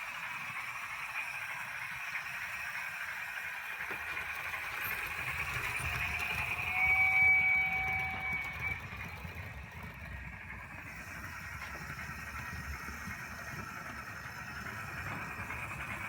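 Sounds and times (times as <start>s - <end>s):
model steam locomotive running noise: 0.0s - 16.0s
high brake squeal: 4.1s - 10.1s.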